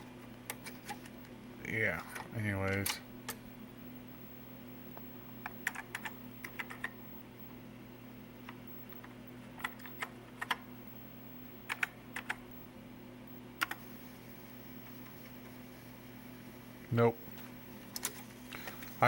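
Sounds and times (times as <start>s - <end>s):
steady low hum: 0.0s - 19.0s
clicky keyboard key presses: 5.4s - 6.9s, 13.6s - 13.8s.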